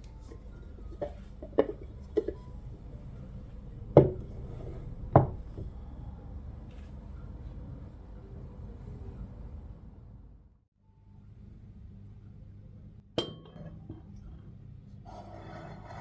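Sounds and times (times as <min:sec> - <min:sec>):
hard objects knocking and clattering: 0:00.2 - 0:02.8, 0:03.8 - 0:05.8.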